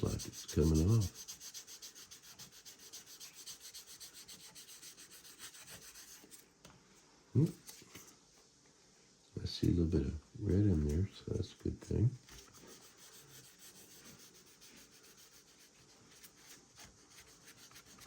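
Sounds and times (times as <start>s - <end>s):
sanding sponge rubbing plastic: 0.0s - 6.4s, 12.4s - 18.0s.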